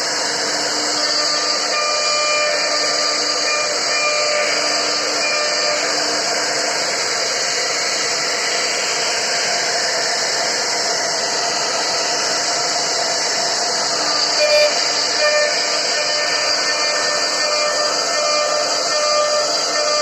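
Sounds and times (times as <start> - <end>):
router spindle cutting wood: 0.0 - 20.0
short loud tones: 0.8 - 6.7, 14.0 - 20.0.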